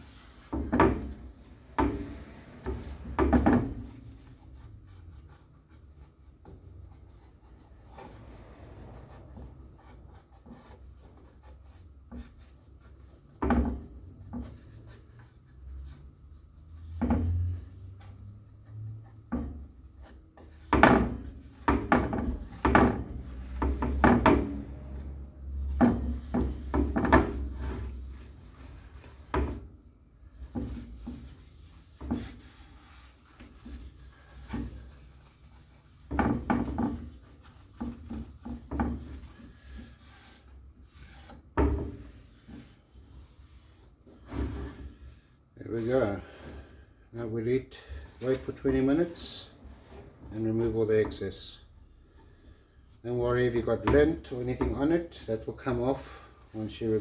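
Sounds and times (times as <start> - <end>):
wooden knocks and scrapes: 0.0 - 57.0
hand rubbing oil into wood: 21.4 - 44.3.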